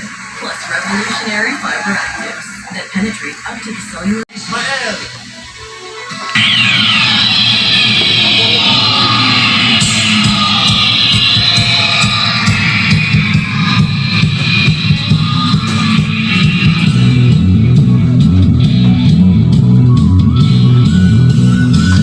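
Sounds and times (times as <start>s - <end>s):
rock music with electric guitar: 4.9s - 22.0s.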